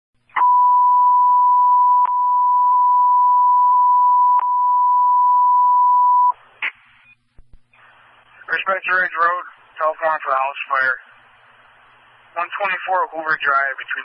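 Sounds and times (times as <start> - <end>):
radio hiss: 7.8 - 14.0.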